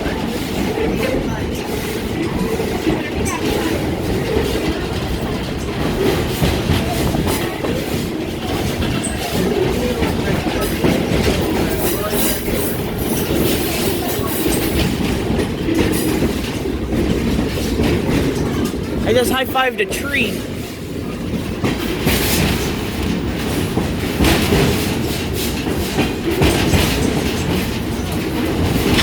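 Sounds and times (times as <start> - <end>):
steel wheels rumbling on rail: 0.0 - 29.0
rail joint clicks: 21.3 - 27.5.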